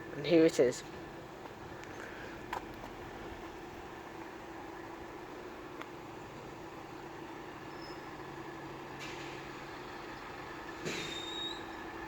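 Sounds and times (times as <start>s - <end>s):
diesel locomotive engine drone: 0.0s - 12.0s
short high squeal: 7.7s - 8.1s, 11.0s - 11.8s.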